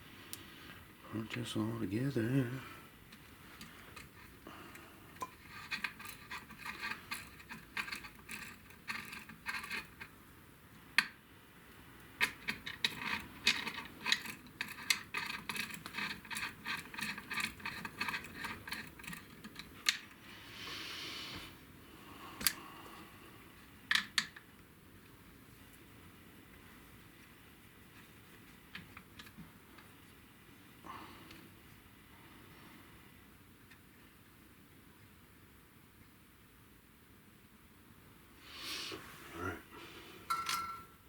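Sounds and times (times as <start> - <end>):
small parts clicking and tapping: 5.2 - 10.1, 12.2 - 20.2, 23.9 - 24.5
brief hiss: 38.4 - 39.3.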